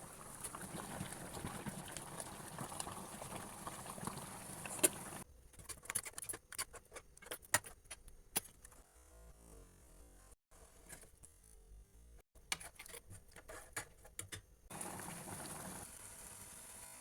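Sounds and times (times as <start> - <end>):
okra sizzling in a pot: 0.0 - 5.3, 14.7 - 17.0.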